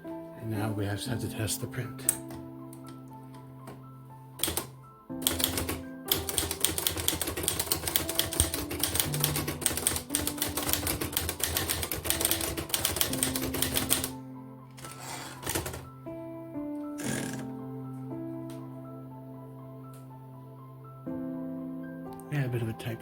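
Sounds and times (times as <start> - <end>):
background music: 0.0 - 23.0
typewriter key strikes: 4.4 - 14.1, 14.8 - 15.8.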